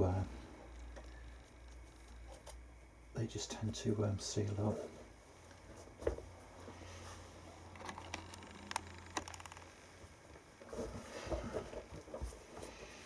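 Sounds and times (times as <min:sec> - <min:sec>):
low steady hum: 0:00.0 - 0:13.0
small sharp clicks and ticks: 0:07.8 - 0:09.7.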